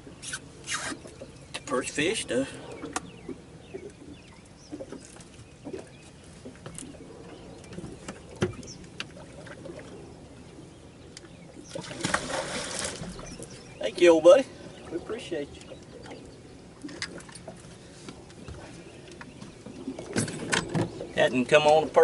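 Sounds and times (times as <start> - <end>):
water splashing: 11.5 - 18.0.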